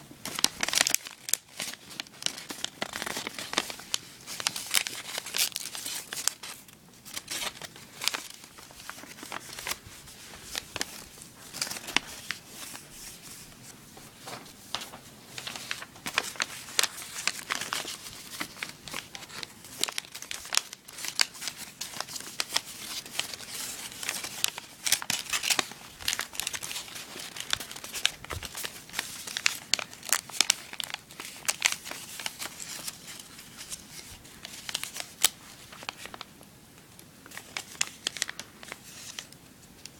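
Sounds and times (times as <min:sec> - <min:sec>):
paper crinkling and crackling: 0:00.0 - 0:39.9.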